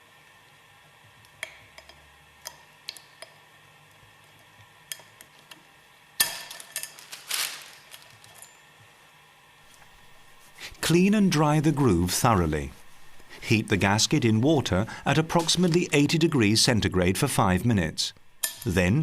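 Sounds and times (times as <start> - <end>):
metal parts clinking and tapping: 6.2 - 8.7.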